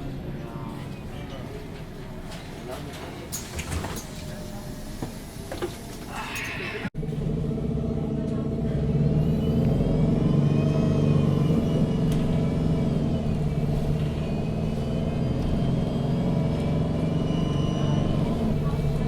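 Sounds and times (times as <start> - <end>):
bus engine running: 0.0 - 19.0
drivetrain whine: 7.0 - 19.0.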